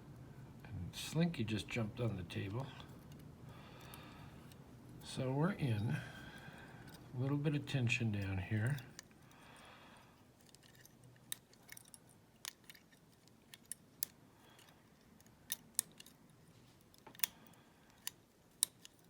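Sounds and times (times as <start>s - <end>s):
lock pick scraping: 10.4s - 19.0s
lock pick clicking in padlock: 15.2s - 16.2s, 16.8s - 19.0s.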